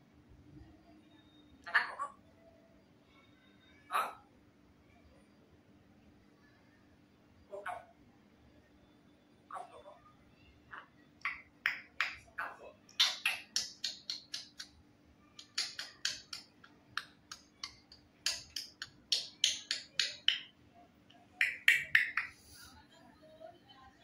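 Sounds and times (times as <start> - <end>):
faint steady hum: 0.0 - 24.0
parrot clicking and chirping: 10.7 - 14.8, 15.4 - 22.4.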